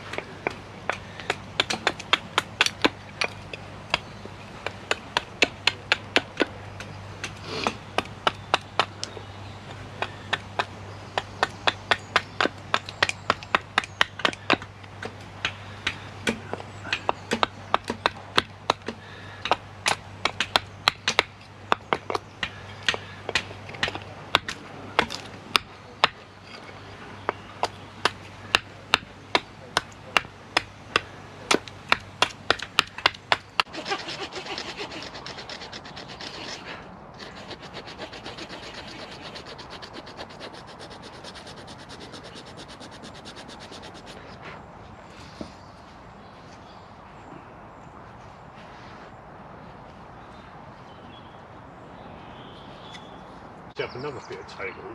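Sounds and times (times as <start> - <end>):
sharp knocks striking wood: 0.0 - 9.1, 9.9 - 26.2, 27.2 - 33.7.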